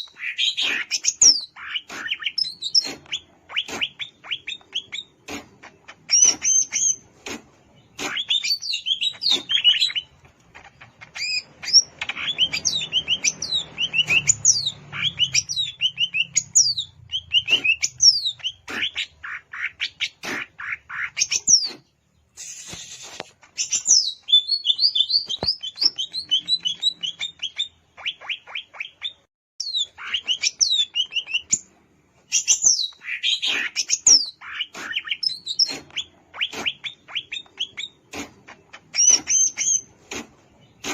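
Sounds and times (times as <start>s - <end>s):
brief hiss: 22.4s - 23.3s.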